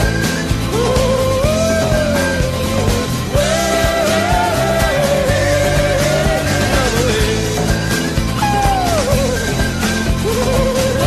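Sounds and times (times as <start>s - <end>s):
background music with sliding melody: 0.0s - 11.0s.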